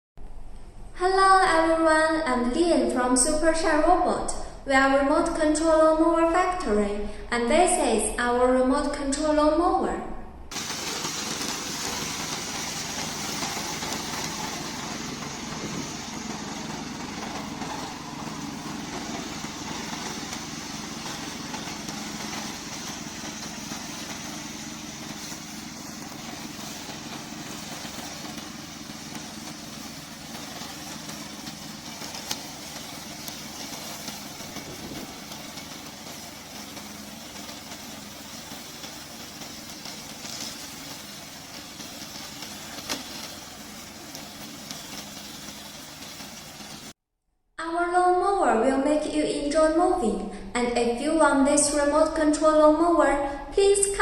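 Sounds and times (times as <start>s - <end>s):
small mower engine running: 10.5s - 47.0s.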